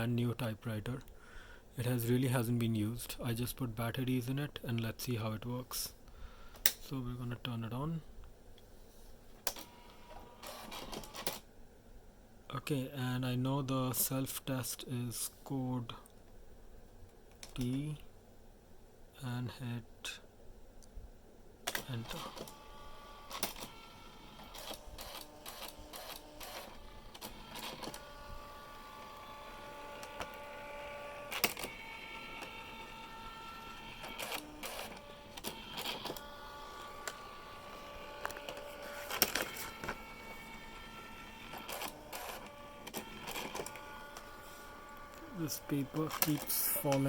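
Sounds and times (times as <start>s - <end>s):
typewriter motor whine: 9.5s - 11.4s, 21.7s - 47.0s.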